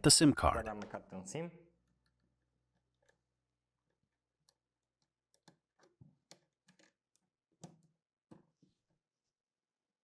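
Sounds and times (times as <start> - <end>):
small clicks and taps: 1.8 - 8.6.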